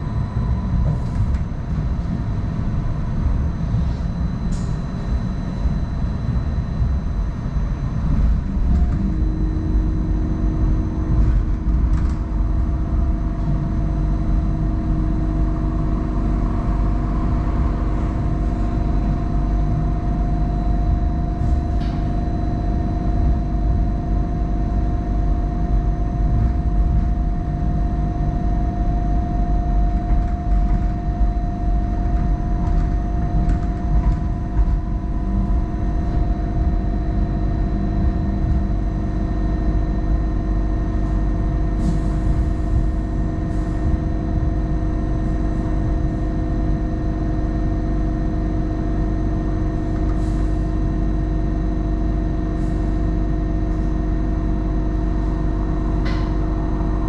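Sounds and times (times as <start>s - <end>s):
electrical hums: 0.0s - 57.0s
wheels rumbling on track: 7.8s - 40.0s.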